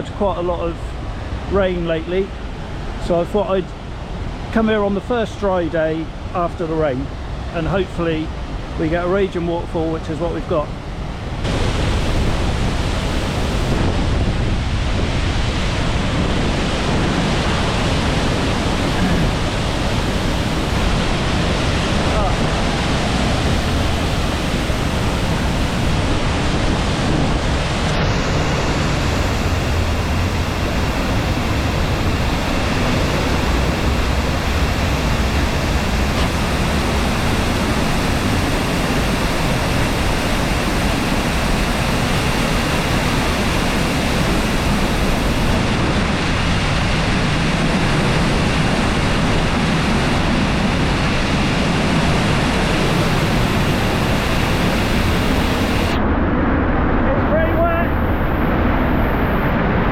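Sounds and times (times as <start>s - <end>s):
waterfall rushing: 11.4s - 56.0s.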